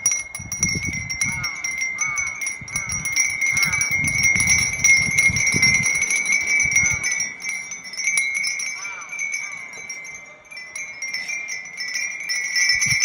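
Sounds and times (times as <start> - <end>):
wind chimes tinkling: 0.0 - 13.0.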